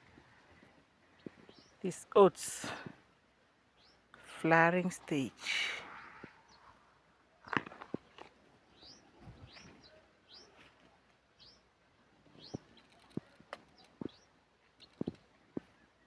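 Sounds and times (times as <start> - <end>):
small birds chirping: 0.6 - 1.8, 7.4 - 10.8, 11.4 - 16.0.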